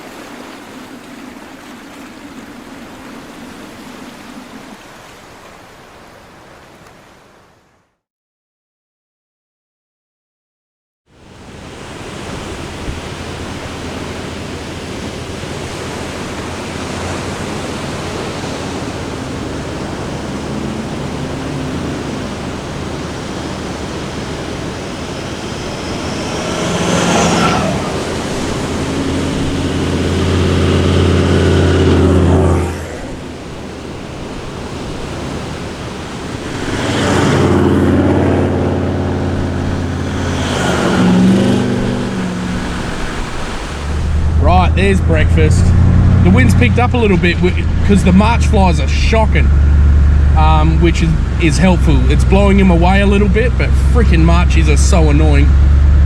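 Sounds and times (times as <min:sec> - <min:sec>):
surf or wind noise: 0:00.0 - 0:07.8, 0:11.1 - 0:56.0
vehicle engine running: 0:11.4 - 0:56.0.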